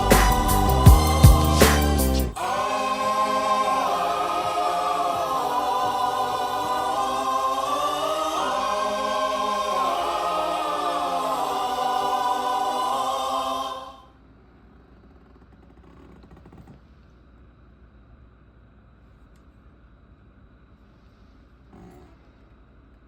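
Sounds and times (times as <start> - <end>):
choir singing held chords: 0.0 - 14.2.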